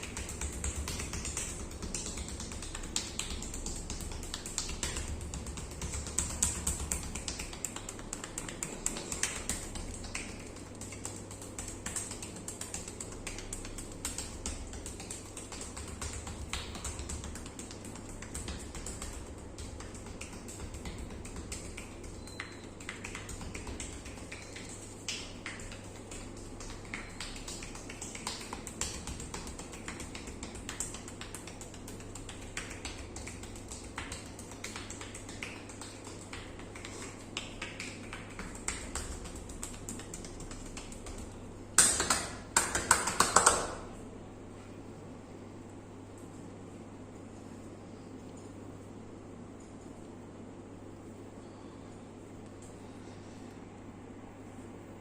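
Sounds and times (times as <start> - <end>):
hands slapping skin: 0.0 - 44.0.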